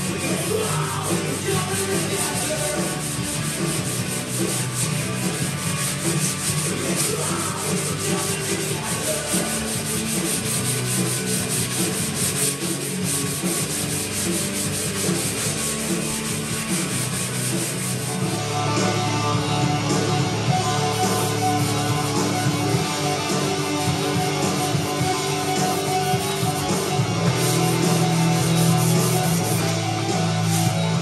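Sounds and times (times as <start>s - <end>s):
sandpaper scratching wood: 0.0s - 18.5s, 20.0s - 30.9s.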